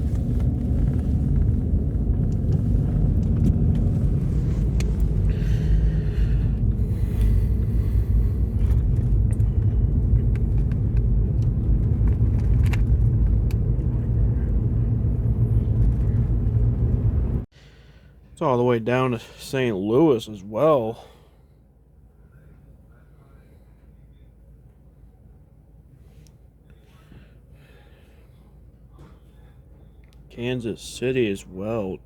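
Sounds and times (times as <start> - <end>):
road and engine rumble in car: 0.0 - 17.6, 25.2 - 32.0.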